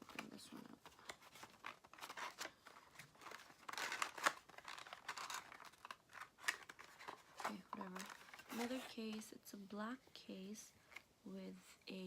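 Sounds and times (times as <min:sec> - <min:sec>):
packaging crinkling and tearing: 0:00.0 - 0:09.2.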